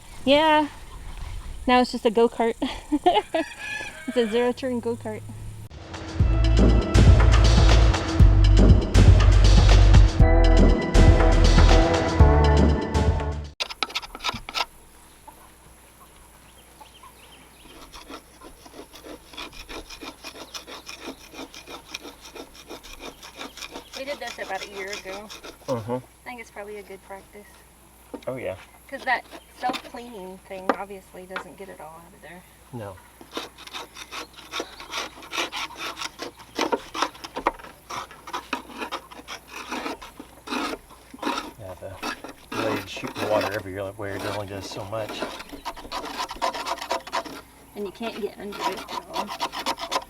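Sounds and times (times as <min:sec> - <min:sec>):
hand scraping mower deck: 0:17.6 - 0:25.8, 0:33.2 - 0:50.0.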